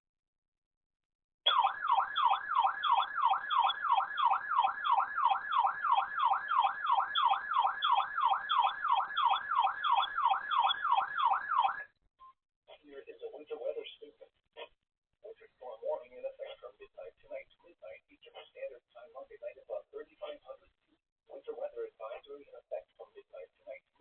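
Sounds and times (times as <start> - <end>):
warbling alarm siren tone: 1.5 - 11.9.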